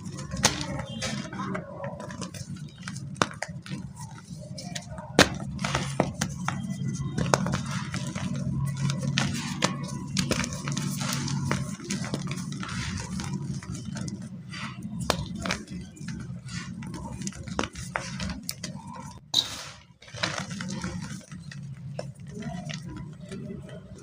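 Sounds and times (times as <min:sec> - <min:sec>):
chalk being crushed by hand: 0:00.0 - 0:23.4.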